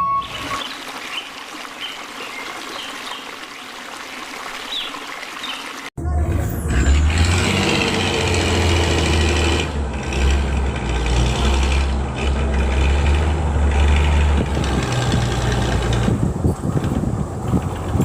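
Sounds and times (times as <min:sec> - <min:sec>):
vehicle engine rumbling: 0:06.0 - 0:18.0.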